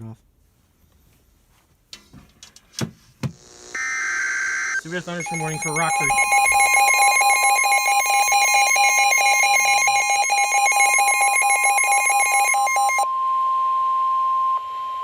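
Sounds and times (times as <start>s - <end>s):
steady high alarm tone: 3.8s - 13.0s
weather radio alarm beeping rapidly: 3.8s - 13.0s.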